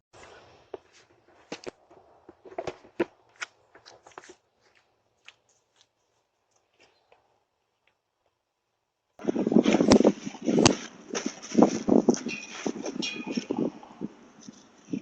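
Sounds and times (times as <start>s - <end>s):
rustling: 9.2s - 15.0s.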